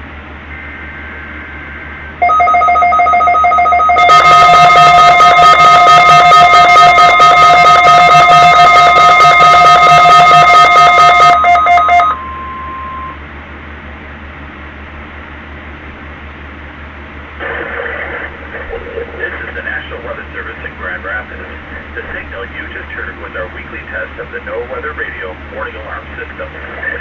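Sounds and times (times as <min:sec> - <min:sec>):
shrill alarm tone and beeping: 0:02.2 - 0:13.2
warbling digital data tones: 0:02.2 - 0:13.2.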